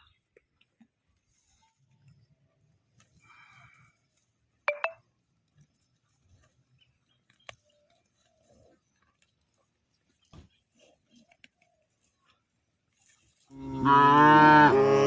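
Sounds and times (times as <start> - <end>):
rustling: 0.7 - 13.8
high-pitched pings: 4.7 - 5.0.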